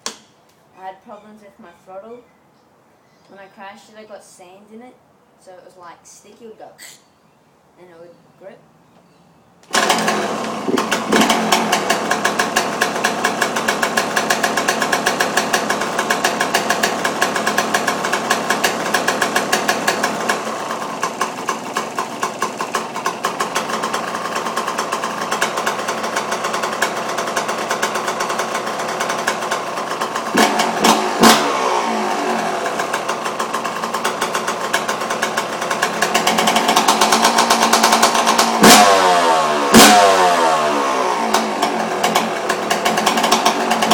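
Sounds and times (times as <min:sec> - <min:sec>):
engine revving: 0:09.7 - 0:43.9
two-stroke engine starting and idling: 0:09.7 - 0:43.9.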